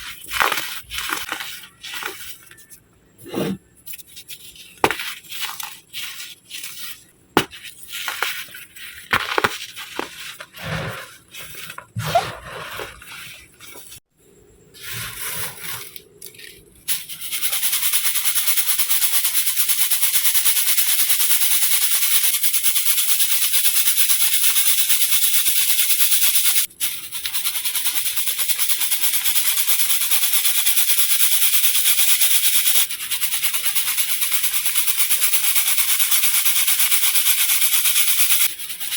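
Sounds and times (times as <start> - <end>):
baking soda crunched by hand: 0.0 - 2.7, 3.9 - 14.0
powder sifted through a sieve: 0.0 - 14.1, 14.7 - 38.9.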